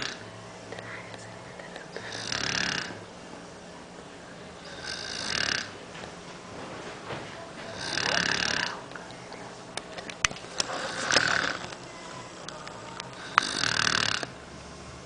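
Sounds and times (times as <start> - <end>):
person snoring: 0.0 - 0.2, 1.8 - 3.0, 4.6 - 5.8, 7.7 - 8.9, 10.5 - 15.0.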